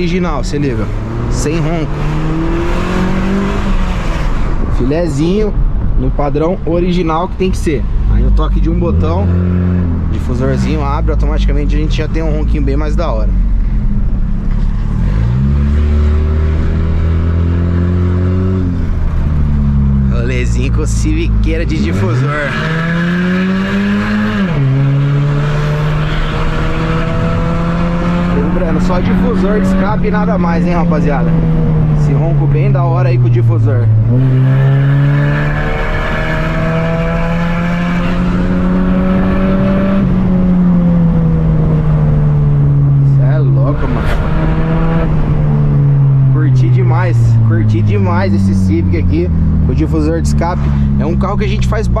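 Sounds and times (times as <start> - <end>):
car engine accelerating: 0.0 - 52.0.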